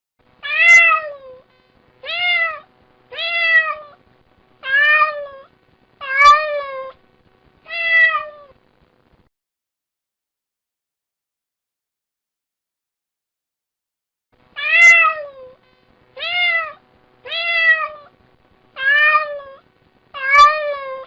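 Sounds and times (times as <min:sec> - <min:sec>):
kitten meowing: 0:00.4 - 0:01.4, 0:02.0 - 0:04.0, 0:04.6 - 0:07.0, 0:07.7 - 0:08.5, 0:14.6 - 0:15.6, 0:16.2 - 0:18.1, 0:18.8 - 0:19.6, 0:20.2 - 0:21.0.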